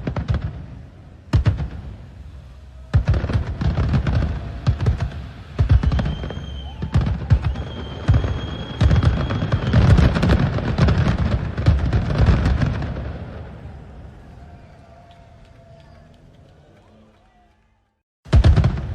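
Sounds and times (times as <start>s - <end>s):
fireworks bangs and crackling: 0.0s - 16.9s, 18.3s - 18.9s
long high firework whistles: 1.3s - 11.4s, 12.0s - 16.3s.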